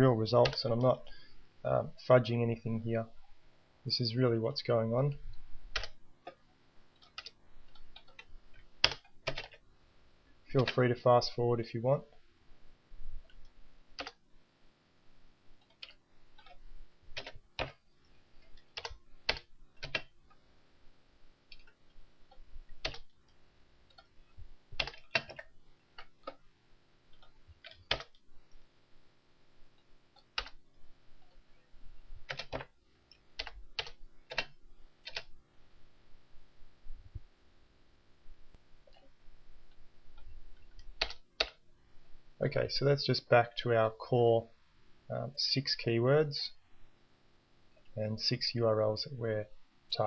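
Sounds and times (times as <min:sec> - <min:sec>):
keyboard keys tapping: 0:14.0 - 0:14.2, 0:18.5 - 0:20.1, 0:21.5 - 0:23.1, 0:24.8 - 0:26.4, 0:27.2 - 0:28.2, 0:32.2 - 0:32.7, 0:33.4 - 0:35.3.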